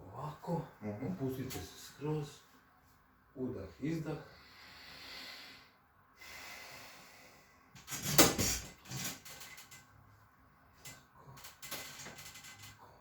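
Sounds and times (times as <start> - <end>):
person breathing: 4.3 - 7.8.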